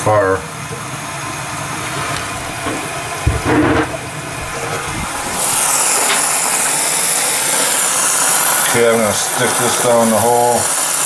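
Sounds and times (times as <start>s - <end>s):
tap water running into sink: 2.1s - 11.0s
short thump: 2.2s - 6.3s.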